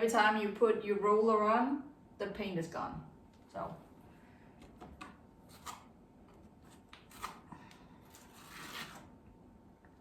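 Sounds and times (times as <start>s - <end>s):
trowel scraping wall: 8.1s - 9.1s.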